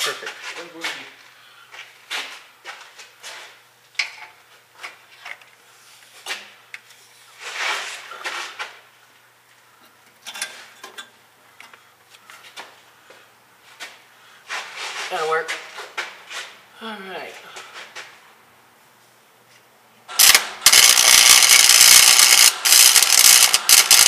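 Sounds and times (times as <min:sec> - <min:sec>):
scraping rustle: 0:05.9 - 0:08.8, 0:14.5 - 0:16.6.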